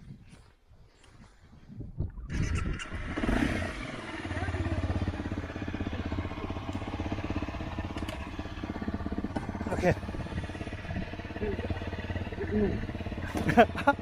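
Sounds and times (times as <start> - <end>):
small motorcycle engine idling: 2.4 - 14.0.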